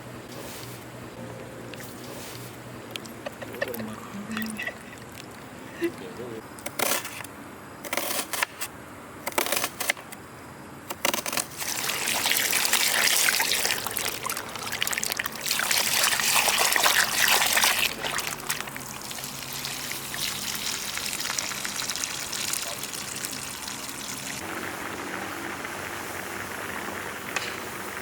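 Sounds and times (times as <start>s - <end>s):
water pouring and splashing: 11.4s - 28.0s.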